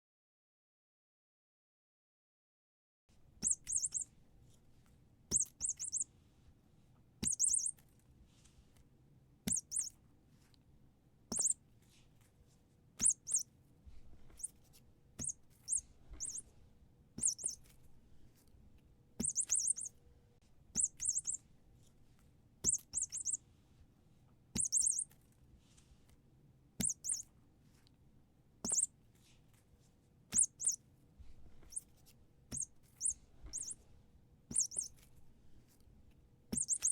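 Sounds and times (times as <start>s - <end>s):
squeaky toy squeaking: 3.4s - 4.0s, 5.3s - 6.0s, 7.2s - 7.7s, 9.5s - 9.9s, 11.3s - 11.6s, 13.0s - 13.4s, 15.2s - 16.4s, 17.2s - 17.6s, 19.2s - 19.9s, 20.8s - 21.4s, 22.6s - 23.4s, 24.6s - 25.0s, 26.8s - 27.2s, 28.6s - 28.9s, 30.3s - 30.8s, 32.6s - 33.8s, 34.5s - 35.0s, 36.6s - 36.9s.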